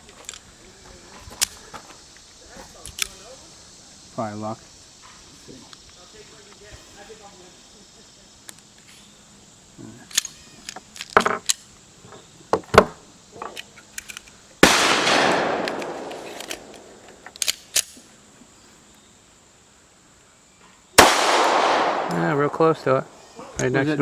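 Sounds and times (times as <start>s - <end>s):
pistol shot: 14.6s - 17.0s, 21.0s - 22.7s.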